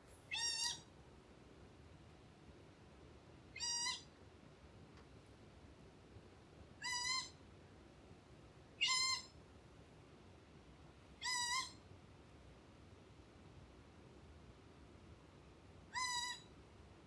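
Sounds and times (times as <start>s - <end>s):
owl giving cat-like calls: 0.3s - 0.9s, 3.5s - 4.1s, 6.8s - 7.4s, 8.8s - 9.4s, 11.2s - 11.8s, 15.9s - 16.5s.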